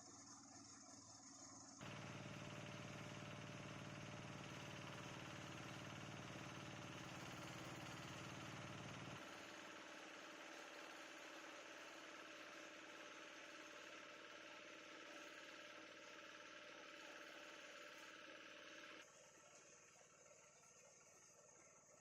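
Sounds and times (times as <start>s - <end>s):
shredder machine motor hum: 1.8s - 19.0s.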